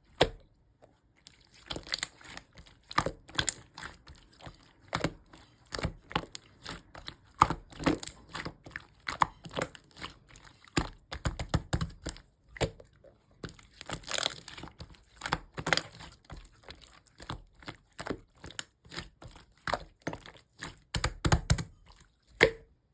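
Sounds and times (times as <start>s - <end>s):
slime clicking and popping: 10.8s - 12.8s, 20.8s - 21.8s, 22.4s - 22.7s.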